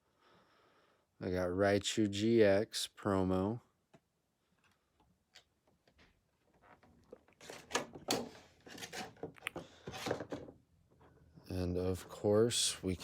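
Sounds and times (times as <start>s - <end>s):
packaging rustling and scraping: 7.0s - 10.5s.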